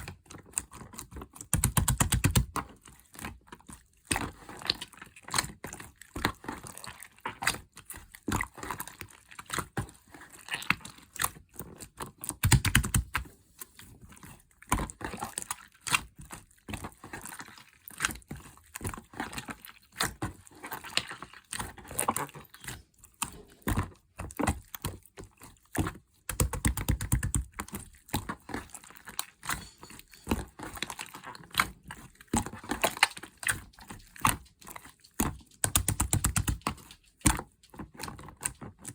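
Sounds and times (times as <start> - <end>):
slime squishing and popping: 0.0 - 13.3, 14.1 - 38.9.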